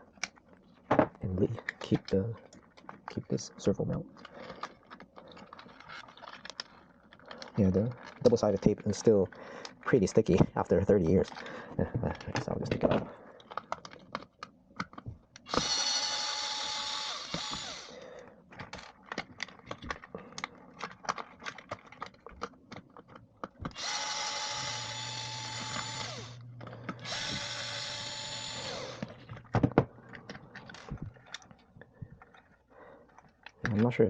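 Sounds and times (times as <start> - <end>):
small parts clicking and knocking: 0.0 - 34.0
small power tool motor whine: 15.5 - 18.0, 23.7 - 29.2.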